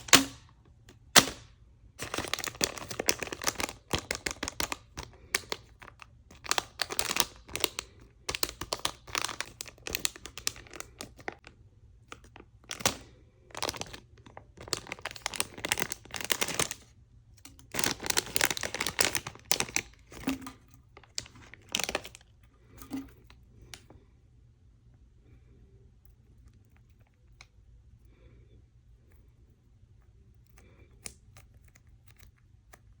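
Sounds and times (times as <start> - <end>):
sharp cracks: 1.0 - 4.2
packaging crinkling and tearing: 2.0 - 11.5, 12.1 - 23.1.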